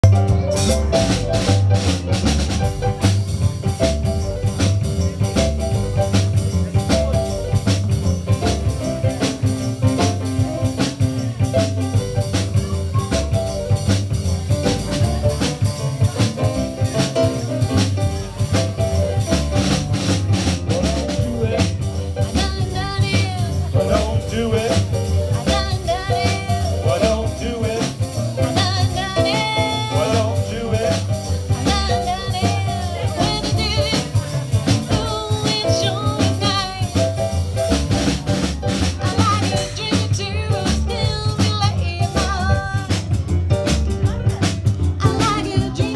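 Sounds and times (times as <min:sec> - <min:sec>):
drum kit beat: 0:00.0 - 0:45.9
live swing band playing: 0:00.0 - 0:45.9
person singing: 0:20.7 - 0:37.1, 0:45.0 - 0:45.9.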